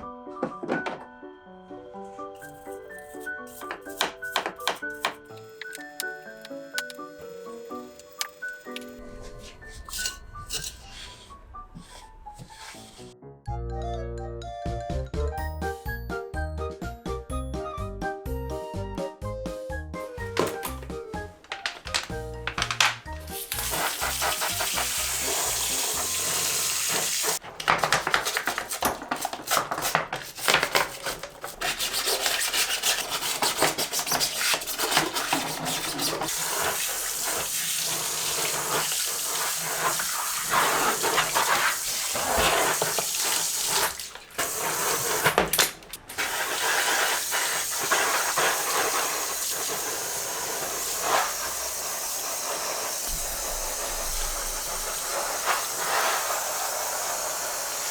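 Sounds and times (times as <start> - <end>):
running water hiss: 4.8 - 9.0, 23.2 - 27.4, 33.4 - 57.9.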